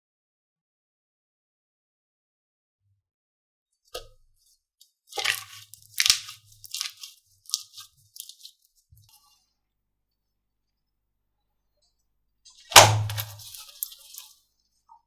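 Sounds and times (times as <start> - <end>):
slime squished by hand: 5.1 - 8.5, 12.7 - 14.3.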